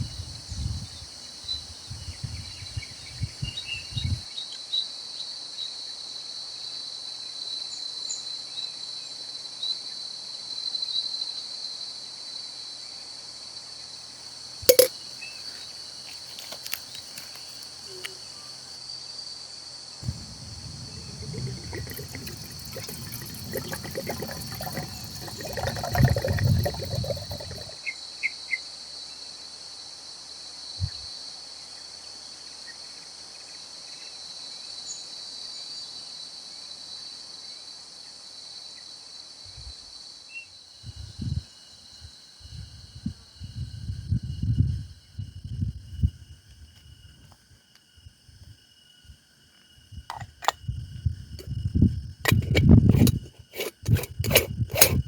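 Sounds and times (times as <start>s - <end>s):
insects chorus: 14.8s - 18.8s, 20.0s - 27.7s.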